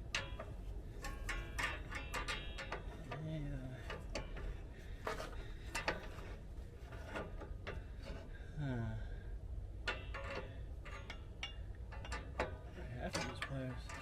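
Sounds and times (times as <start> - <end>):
metallic clicks of brake tool: 0.0 - 3.2, 9.8 - 14.0
man murmuring: 8.6 - 9.2.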